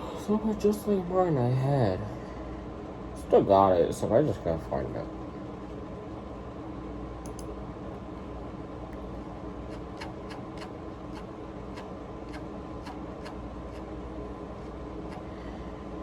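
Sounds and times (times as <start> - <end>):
room hum: 0.0 - 16.0
faint irregular clicks: 7.2 - 7.5, 9.7 - 13.9.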